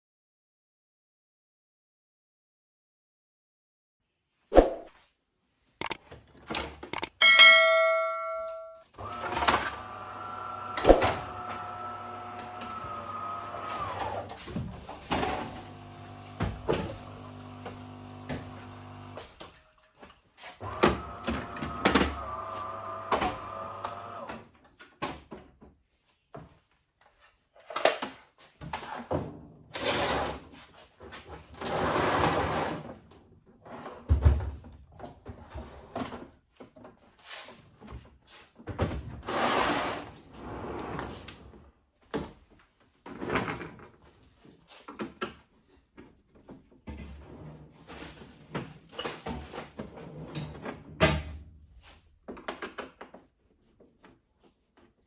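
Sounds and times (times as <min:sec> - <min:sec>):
coffee machine motor running: 0:09.0 - 0:19.4, 0:20.6 - 0:24.3.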